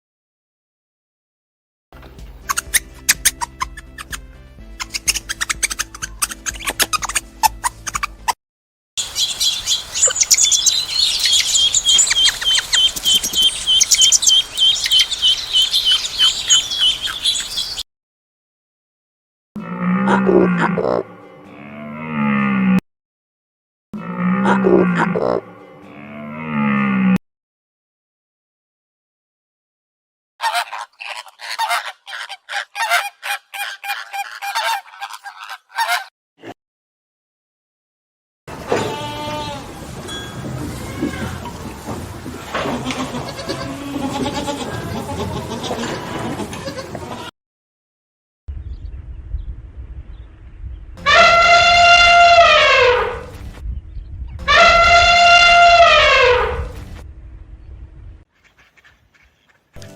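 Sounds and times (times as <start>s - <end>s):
geese honking: 9.0s - 17.8s, 30.4s - 36.1s, 51.0s - 53.3s, 54.4s - 56.6s
high twittering: 9.0s - 17.8s
songbird chirping: 9.0s - 17.8s.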